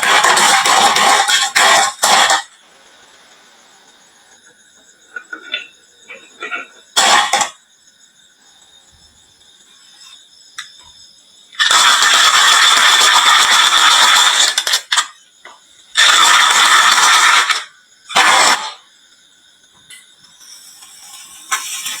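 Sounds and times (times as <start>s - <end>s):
marbles rolling down wooden slope: 0.0s - 2.4s.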